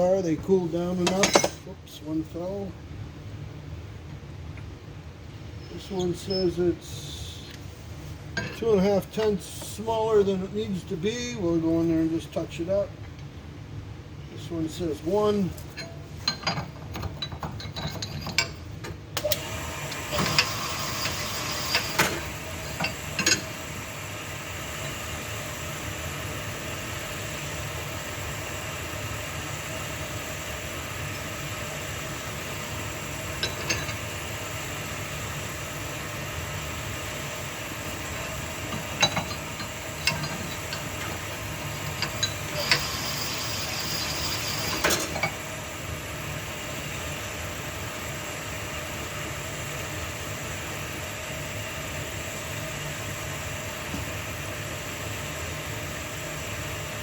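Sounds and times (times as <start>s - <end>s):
honing machine running: 19.2s - 23.9s, 38.0s - 45.7s.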